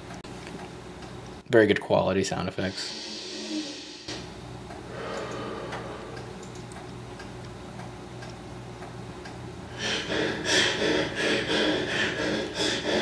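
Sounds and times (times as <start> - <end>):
low steady hum: 0.0 - 13.0
heavy breathing through speaker: 2.7 - 4.2, 4.8 - 6.5, 9.7 - 13.0.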